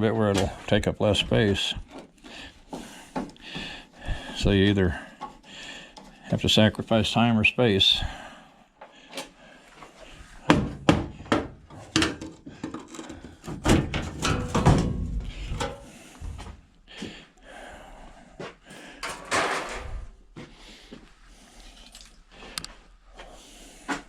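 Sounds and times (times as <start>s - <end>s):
sheet metal panels clanking: 13.4s - 16.0s, 19.0s - 19.9s.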